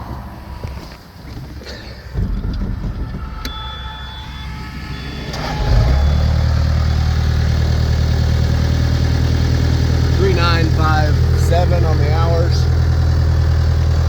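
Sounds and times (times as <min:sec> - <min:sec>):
diesel engine starting and idling: 0:00.0 - 0:14.0
thin high warning tone: 0:02.8 - 0:09.0.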